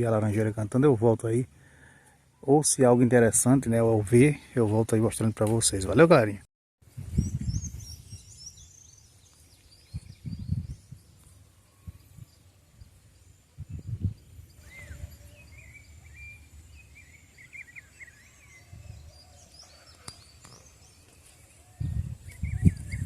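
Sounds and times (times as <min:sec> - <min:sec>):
birds chirping: 0:07.0 - 0:23.0.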